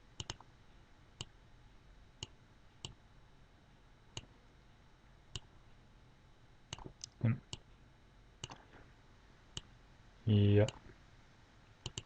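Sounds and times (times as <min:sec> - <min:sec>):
computer mouse clicks: 0:00.2 - 0:00.4, 0:08.4 - 0:08.7.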